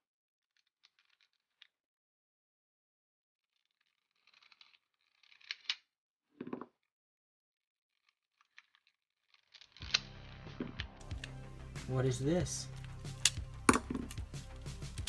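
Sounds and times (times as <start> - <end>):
background music: 9.8 - 15.0.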